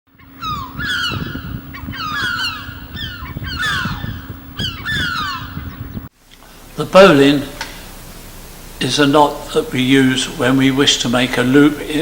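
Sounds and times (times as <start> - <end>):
birds honking calls: 0.1 - 6.1
steady low hum: 0.1 - 12.0.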